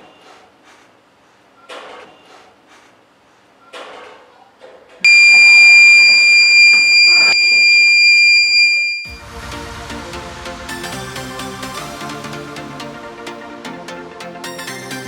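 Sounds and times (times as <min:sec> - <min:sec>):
high-pitched alarm buzzer: 0:05.1 - 0:09.2
electronic music: 0:09.0 - 0:15.0.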